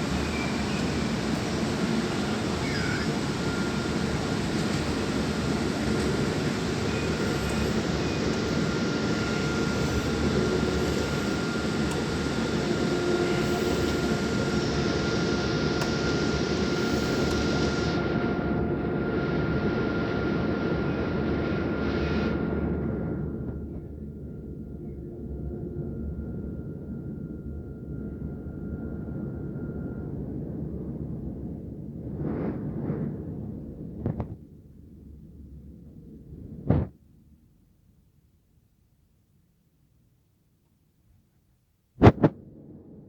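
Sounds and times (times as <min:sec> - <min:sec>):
thin steady whine: 0:00.0 - 0:33.7
tram rolling rumble and hiss: 0:00.0 - 0:37.8.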